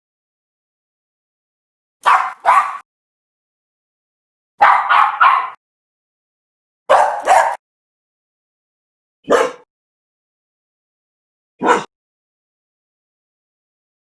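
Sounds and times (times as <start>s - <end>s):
dog barking: 2.0s - 2.8s, 4.6s - 5.6s, 6.9s - 7.6s, 9.2s - 9.7s, 11.6s - 11.9s.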